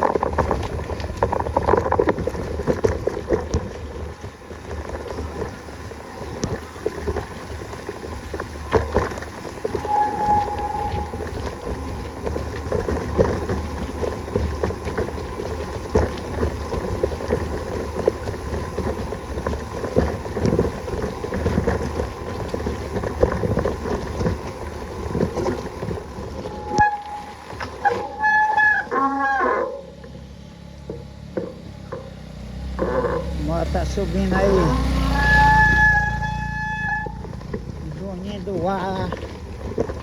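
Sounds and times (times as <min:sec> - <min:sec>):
wind buffeting microphone: 0:00.0 - 0:28.2, 0:32.6 - 0:40.0
bicycle rattling: 0:00.0 - 0:40.0
short high squeals: 0:09.7 - 0:12.1, 0:26.3 - 0:30.3, 0:34.6 - 0:37.4.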